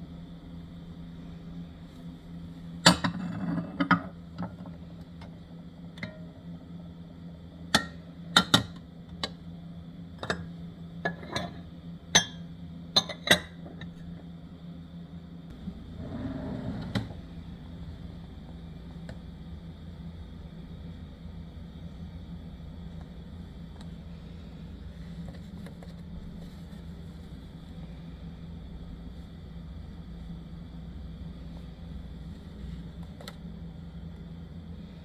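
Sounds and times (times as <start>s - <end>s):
steady hum: 0.0s - 35.0s.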